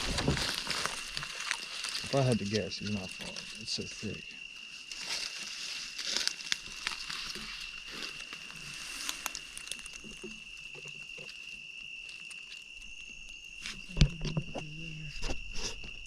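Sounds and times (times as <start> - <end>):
brush snapping underfoot: 0.0 - 3.7, 4.8 - 11.4
insect trilling: 0.0 - 16.0.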